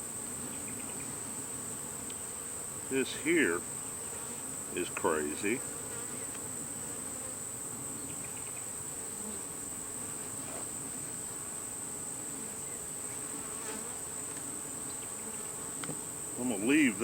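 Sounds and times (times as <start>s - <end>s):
bees buzzing: 0.0s - 17.0s
constant high-pitched tone: 16.4s - 17.0s.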